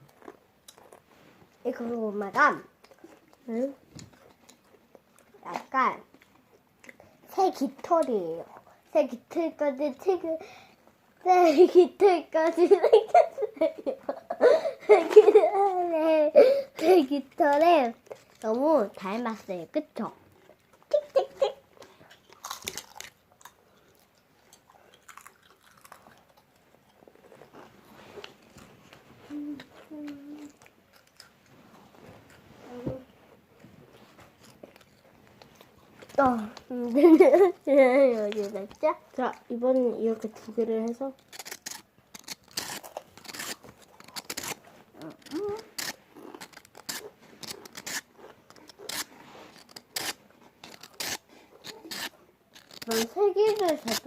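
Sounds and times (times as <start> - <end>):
chewing crisp chips: 21.7 - 28.7, 29.6 - 31.4, 34.4 - 36.2, 41.2 - 54.0.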